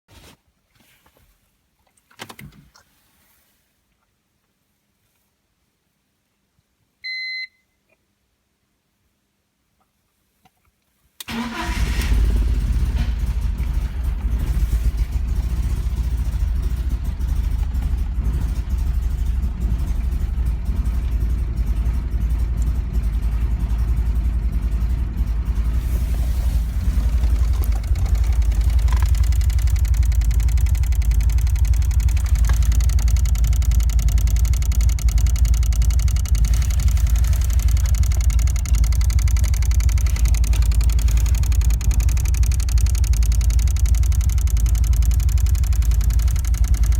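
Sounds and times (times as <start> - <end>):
car engine cranking and idling roughly: 11.2 - 46.9.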